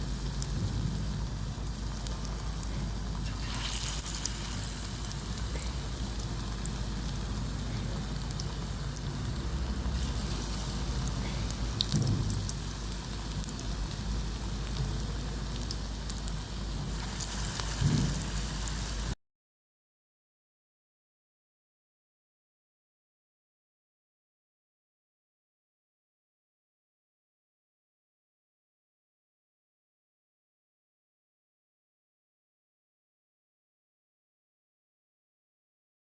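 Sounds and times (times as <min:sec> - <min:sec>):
food deep-frying in hot oil: 0:00.0 - 0:19.2.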